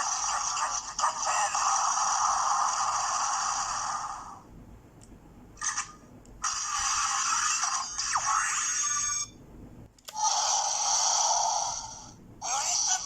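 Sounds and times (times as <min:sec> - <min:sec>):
tinny toy sound effects: 0:10.2 - 0:13.0.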